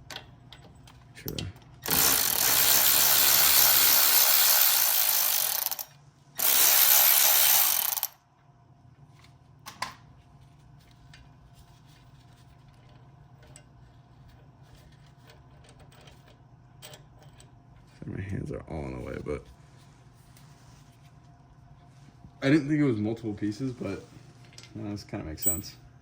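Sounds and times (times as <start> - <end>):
electric ratchet running: 1.8 - 8.2
faint metal handling sounds: 9.0 - 18.3, 23.0 - 25.8.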